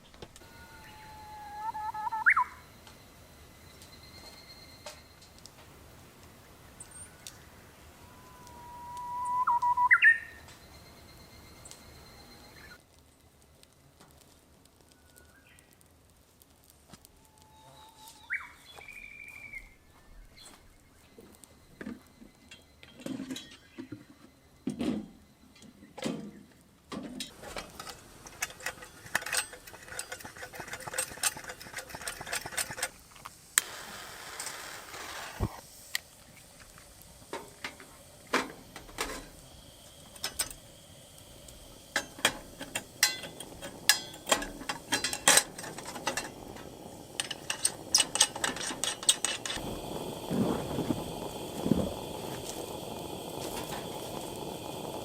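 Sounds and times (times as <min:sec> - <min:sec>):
objects being handled: 0:27.0 - 0:33.5, 0:41.9 - 0:49.6.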